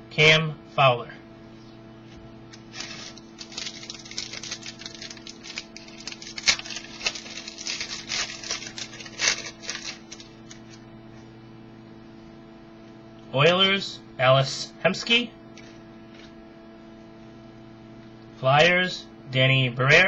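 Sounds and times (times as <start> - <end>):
low electrical hum: 0.0 - 20.0
cards and wrapper crinkling: 2.5 - 10.8.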